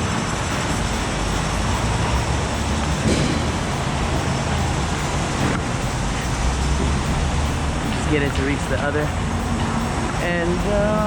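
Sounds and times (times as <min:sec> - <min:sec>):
low rumble: 0:00.0 - 0:11.0.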